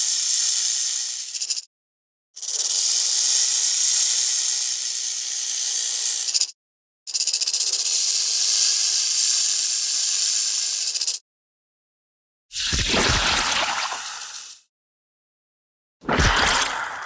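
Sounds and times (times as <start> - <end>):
dinosaur hiss: 2.6 - 6.5, 7.9 - 11.1.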